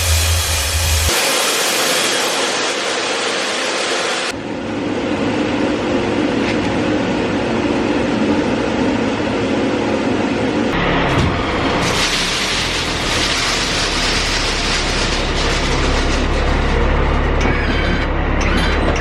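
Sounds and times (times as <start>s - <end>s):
steady hiss: 0.0s - 4.3s
truck engine humming: 4.4s - 19.0s.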